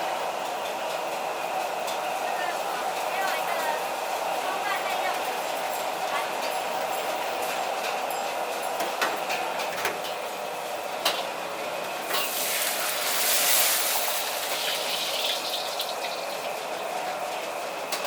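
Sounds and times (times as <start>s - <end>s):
gas burner rushing: 10.6s - 17.4s
vegetables sizzling in wok: 12.0s - 17.0s.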